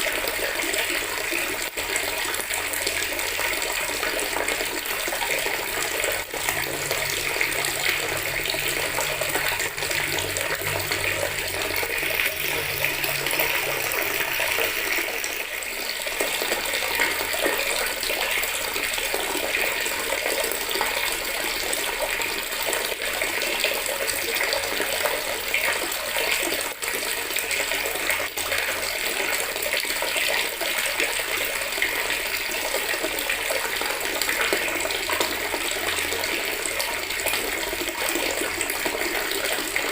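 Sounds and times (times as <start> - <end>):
tap water splashing into bucket: 0.0 - 39.9.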